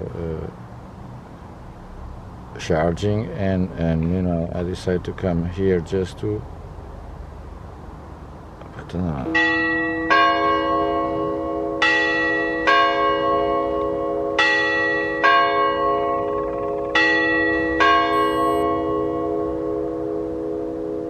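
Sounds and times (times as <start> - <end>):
church clock bell striking: 9.3 - 21.0.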